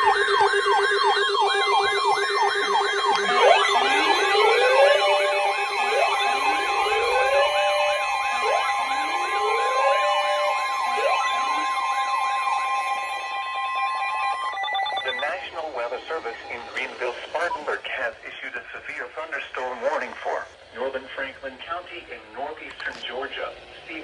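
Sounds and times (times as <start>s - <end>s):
rising siren whoops: 0.0s - 16.4s
electronic siren yelp: 0.0s - 17.7s
steady siren tones: 0.0s - 17.7s.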